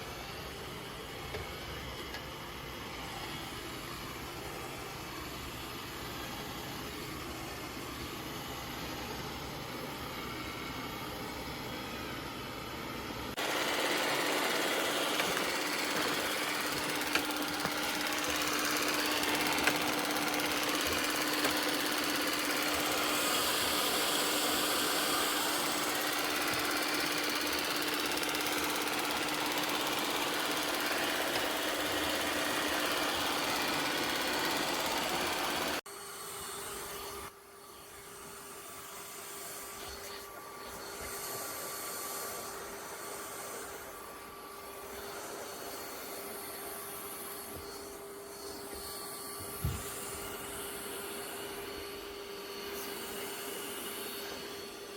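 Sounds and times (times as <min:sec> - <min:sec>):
robot vacuum humming: 0:13.3 - 0:54.9.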